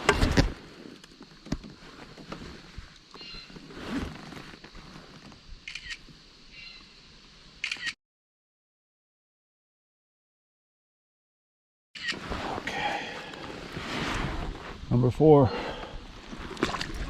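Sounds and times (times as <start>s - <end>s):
clicks and knocks of fishing gear: 16.2s - 17.0s.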